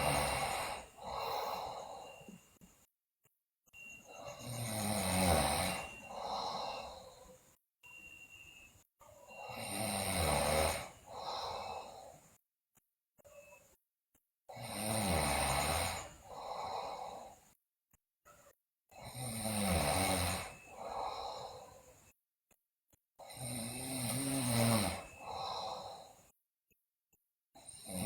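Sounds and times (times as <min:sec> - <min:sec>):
girl snoring loudly: 0:00.0 - 0:02.4, 0:04.1 - 0:07.4, 0:09.2 - 0:12.2, 0:14.5 - 0:17.4, 0:19.0 - 0:21.9, 0:23.2 - 0:26.2, 0:27.6 - 0:28.0.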